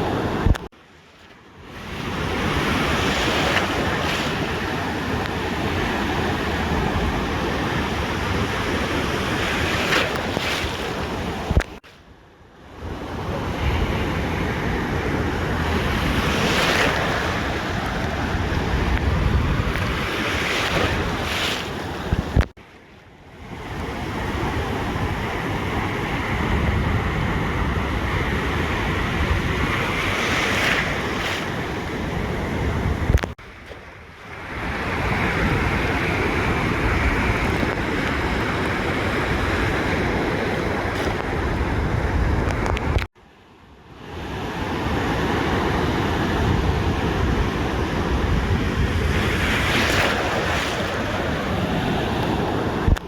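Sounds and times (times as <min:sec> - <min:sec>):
ocean surf breaking on beach: 0:00.0 - 0:53.0
wind buffeting microphone: 0:12.9 - 0:22.5, 0:23.6 - 0:43.1, 0:45.5 - 0:53.0.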